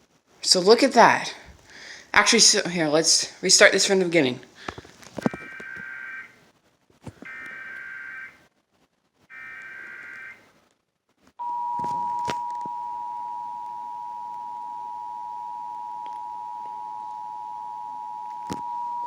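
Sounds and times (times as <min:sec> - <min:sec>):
two-tone attention signal: 0:11.4 - 0:19.0.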